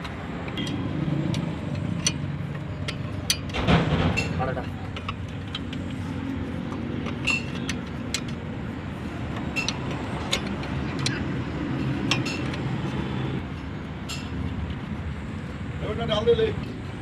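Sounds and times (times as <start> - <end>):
metal tools clinking: 7.0 - 8.4.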